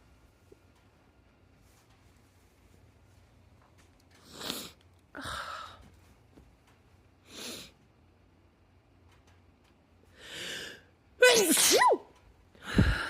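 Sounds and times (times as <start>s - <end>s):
woman sneezing: 11.2s - 12.1s.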